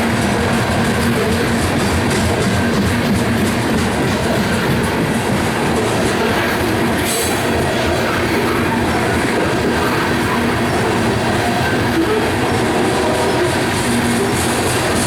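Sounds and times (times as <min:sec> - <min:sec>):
clatter of passing rail cars: 0:00.0 - 0:15.0
train wheels rumbling on rail: 0:00.0 - 0:15.0.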